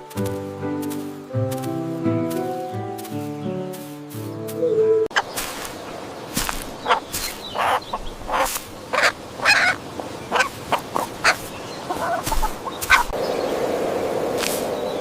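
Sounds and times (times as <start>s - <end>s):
poultry calling: 4.5s - 13.2s.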